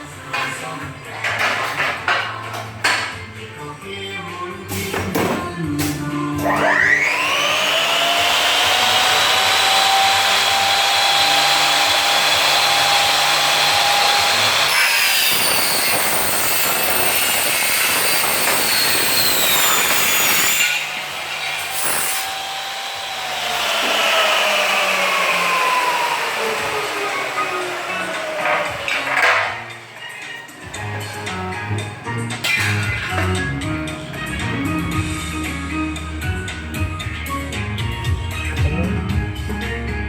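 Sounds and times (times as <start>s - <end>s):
saw motor whine: 6.4s - 29.0s
saw cutting aluminium: 6.4s - 30.8s.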